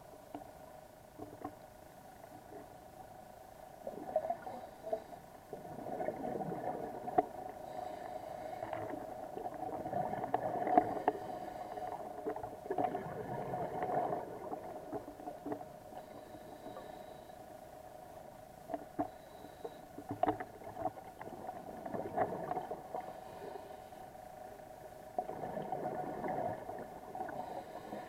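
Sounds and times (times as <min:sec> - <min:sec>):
underwater droning hum: 0:00.0 - 0:28.0
bubbling gurgle: 0:05.6 - 0:07.2, 0:09.5 - 0:11.0, 0:12.6 - 0:14.8, 0:25.2 - 0:27.2.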